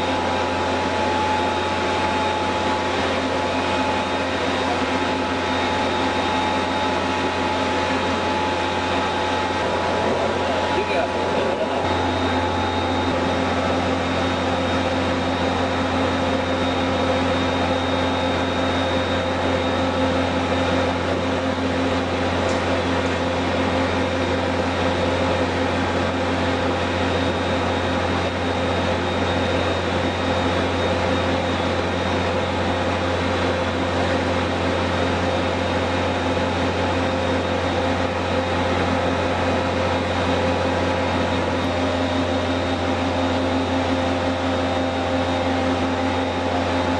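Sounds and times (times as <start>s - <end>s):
machinery whining tones: 0.0s - 46.9s
motor hum: 0.0s - 46.9s.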